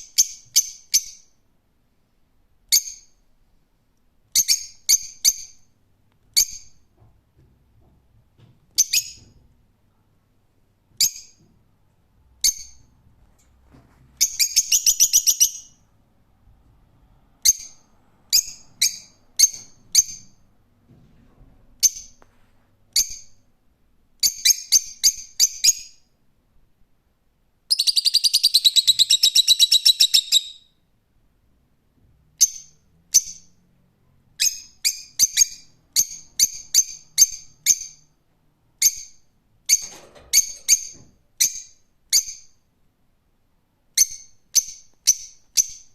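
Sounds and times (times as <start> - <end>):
lovebird chirping and trilling: 0.0 - 1.4, 2.7 - 3.2, 4.3 - 5.7, 6.3 - 6.9, 8.8 - 9.4, 11.0 - 11.4, 12.4 - 13.0, 14.2 - 15.8, 17.4 - 20.4, 21.8 - 22.2, 22.9 - 23.4, 24.2 - 26.1, 27.7 - 30.8, 32.4 - 33.6, 34.4 - 38.2, 38.8 - 42.6, 44.0 - 45.9.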